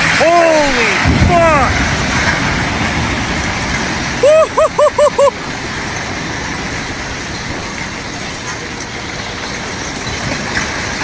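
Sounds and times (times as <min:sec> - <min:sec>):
vehicle engine: 0:01.8 - 0:11.0
short loud pitched calls: 0:04.2 - 0:06.3.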